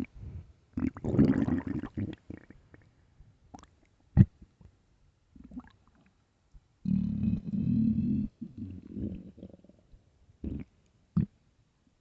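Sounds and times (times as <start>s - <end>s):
stomach gurgling and rumbling: 0.0s - 2.9s, 5.4s - 6.1s, 6.9s - 11.3s.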